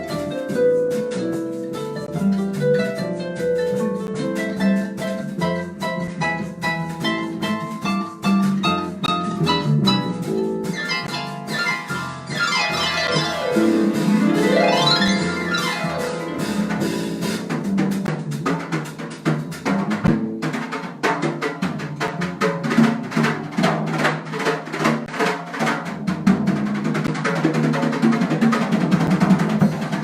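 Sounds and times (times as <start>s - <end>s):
jazz band playing: 0.0s - 27.2s
drums and percussion: 0.0s - 30.0s
harp glissando: 7.1s - 18.1s.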